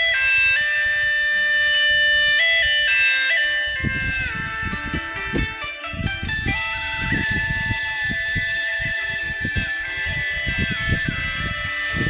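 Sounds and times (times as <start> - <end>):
electronic ringtone melody: 5.3 - 12.0.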